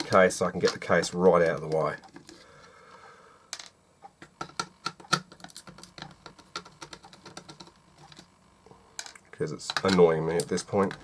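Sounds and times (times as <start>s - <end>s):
clicks and taps of plastic parts: 3.5s - 8.3s, 9.0s - 11.0s.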